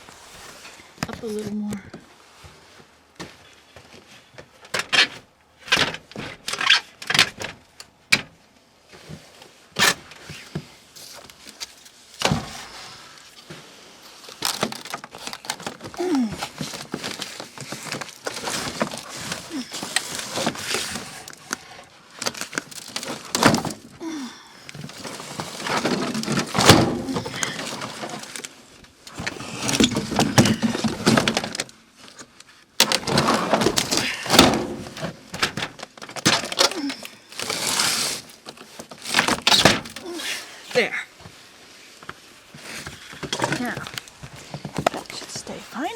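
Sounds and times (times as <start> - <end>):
rustling: 8.3 - 45.9
objects knocking and clattering: 29.1 - 31.8, 42.8 - 45.2.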